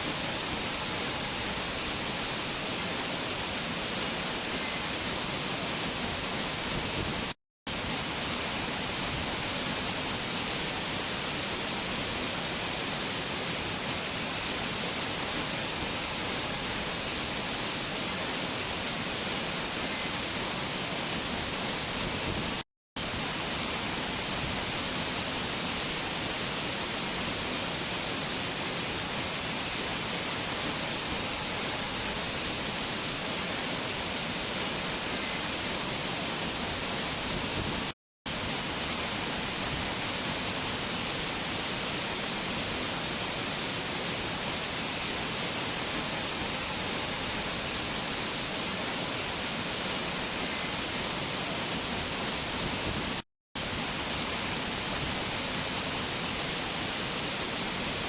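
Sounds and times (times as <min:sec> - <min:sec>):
waterfall rushing: 0:00.0 - 0:58.0.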